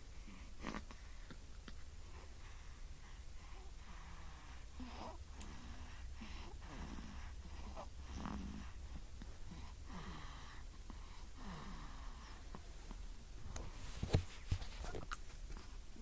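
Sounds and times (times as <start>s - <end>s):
baby snoring: 3.6s - 12.4s.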